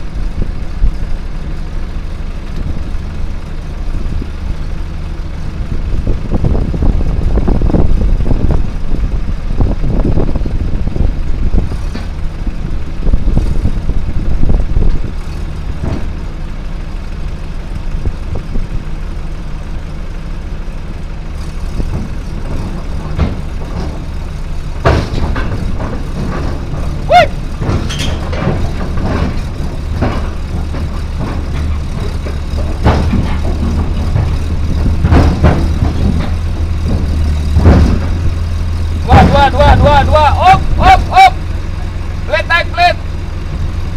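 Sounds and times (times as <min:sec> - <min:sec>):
bulldozer diesel engine running: 0:00.0 - 0:43.9
metallic clanks: 0:21.8 - 0:40.9
short squeal: 0:27.1 - 0:28.2.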